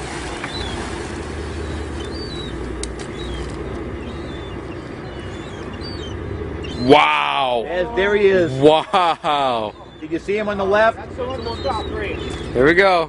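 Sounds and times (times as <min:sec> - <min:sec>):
birds chirping: 0:00.0 - 0:13.0
idling boat engine hum: 0:00.0 - 0:13.0
wind and water noise: 0:00.0 - 0:13.0.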